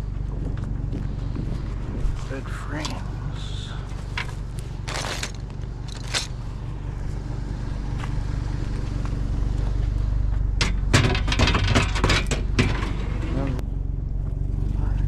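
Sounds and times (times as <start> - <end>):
scraping crunching noises: 0.0 - 15.0
truck engine rumbling: 0.0 - 15.0.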